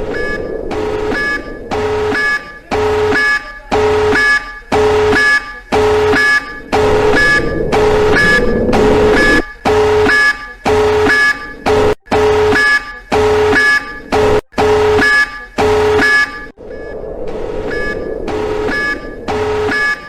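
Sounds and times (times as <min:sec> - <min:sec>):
steady low rumble: 0:00.0 - 0:12.4, 0:15.8 - 0:20.0
electronic alarm beeping: 0:00.0 - 0:20.0.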